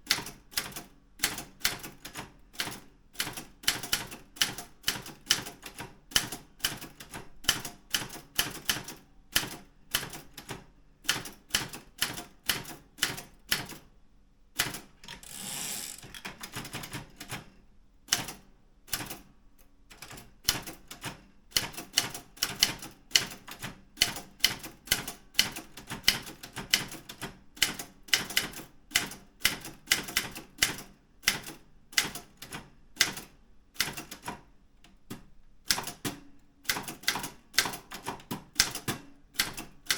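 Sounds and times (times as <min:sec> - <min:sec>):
typewriter carriage return rasp: 0:14.6 - 0:17.2.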